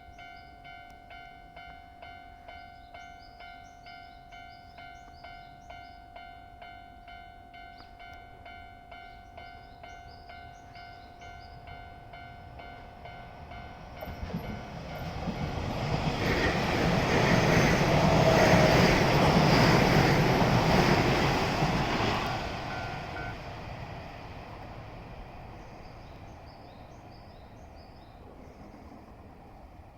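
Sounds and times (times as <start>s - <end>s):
level crossing warning bell: 0.0s - 23.8s
electric train passing: 0.0s - 29.9s.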